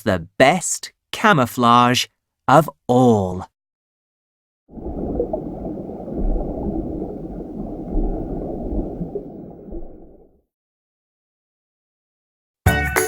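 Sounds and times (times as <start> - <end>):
underwater rumble and gurgling: 4.7 - 10.5.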